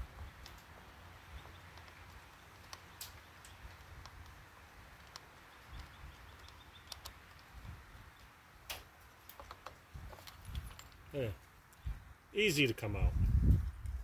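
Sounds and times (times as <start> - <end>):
hand tool clicks and taps: 5.0 - 7.5.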